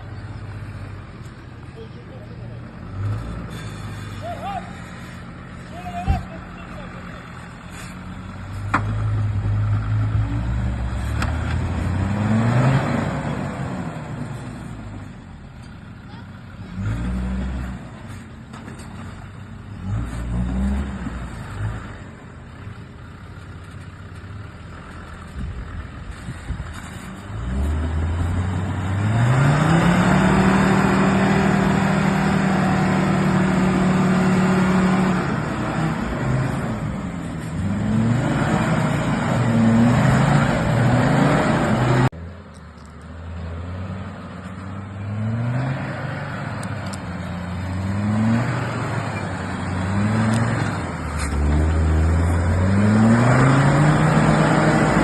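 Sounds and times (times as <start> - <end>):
engine revving hard: 9.9 - 14.0, 27.4 - 36.9, 37.6 - 42.1, 47.7 - 55.0.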